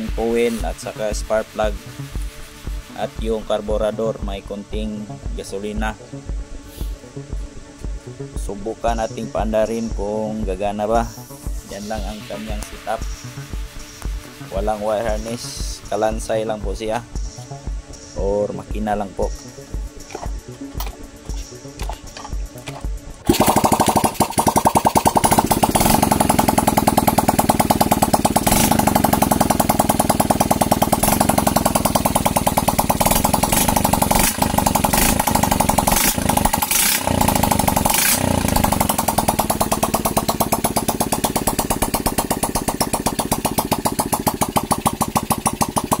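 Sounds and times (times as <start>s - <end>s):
small motorcycle engine running: 23.2s - 46.0s.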